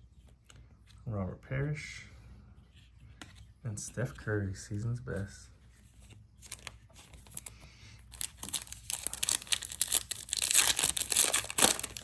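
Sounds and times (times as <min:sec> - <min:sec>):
wrapper being torn and crinkled: 0:08.1 - 0:12.0.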